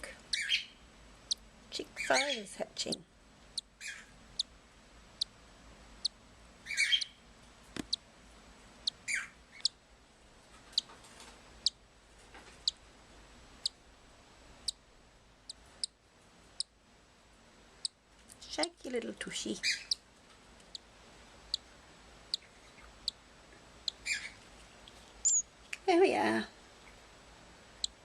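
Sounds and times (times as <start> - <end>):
louder chick chirps: 6.6 - 7.2, 25.2 - 25.5.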